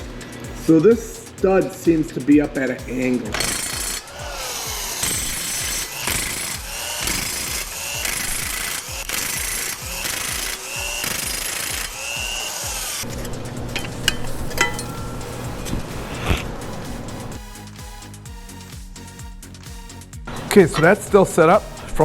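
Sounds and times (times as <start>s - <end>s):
background music: 0.0s - 22.0s
power tool revving: 3.3s - 14.5s.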